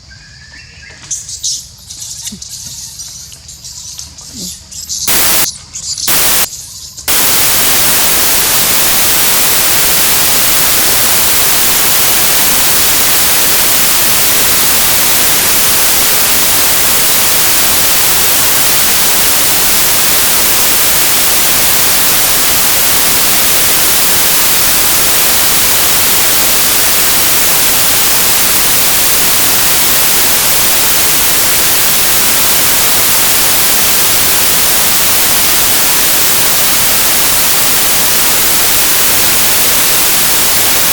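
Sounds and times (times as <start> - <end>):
static hiss: 5.0 - 40.9.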